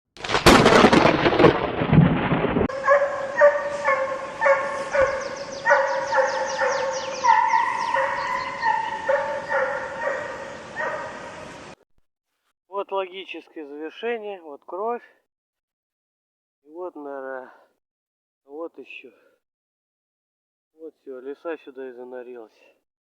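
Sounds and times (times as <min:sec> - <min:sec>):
hound baying: 0:02.7 - 0:11.3.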